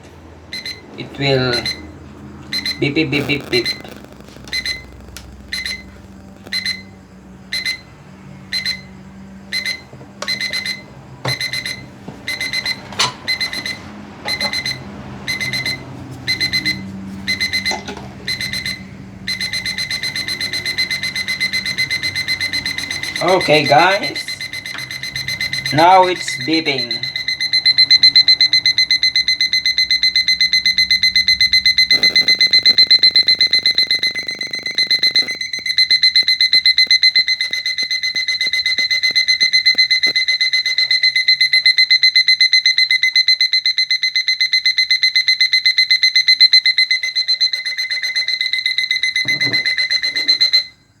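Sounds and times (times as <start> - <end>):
alarm clock beeping: 0.5 - 51.0.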